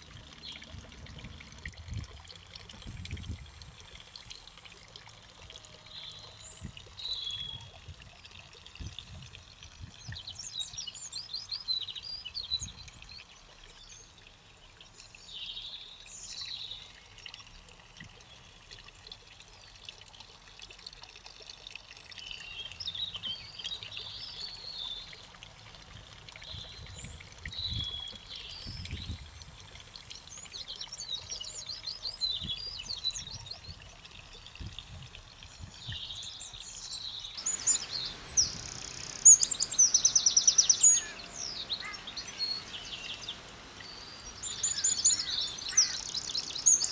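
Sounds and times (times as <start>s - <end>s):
faint steady hiss: 35.5s - 46.9s
birds singing: 35.8s - 46.9s.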